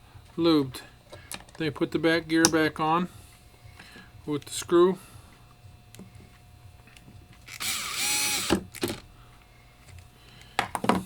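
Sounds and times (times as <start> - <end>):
power screwdriver whine: 7.4 - 9.1.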